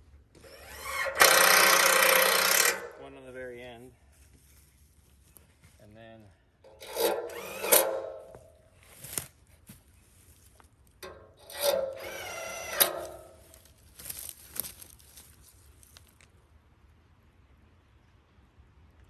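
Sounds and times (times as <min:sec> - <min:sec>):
power drill motor whining: 0:00.4 - 0:03.0, 0:06.7 - 0:08.5, 0:11.4 - 0:13.5.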